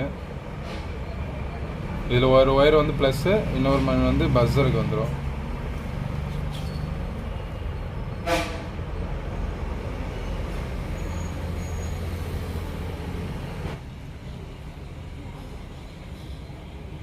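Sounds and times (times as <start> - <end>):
short pitched toot: 8.2 - 8.7.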